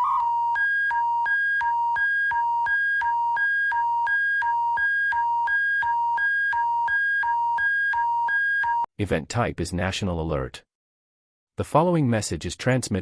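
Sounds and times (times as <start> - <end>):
two-tone electronic alert signal: 0.0 - 8.8.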